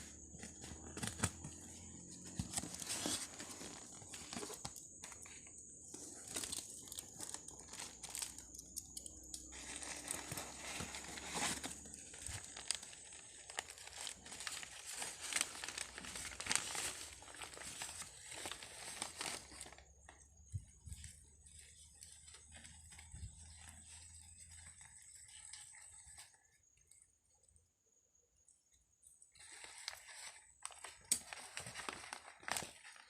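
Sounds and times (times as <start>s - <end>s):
packaging crinkling and rustling: 0.0s - 26.5s, 29.4s - 33.0s
sharp packaging crackles: 0.1s - 20.2s.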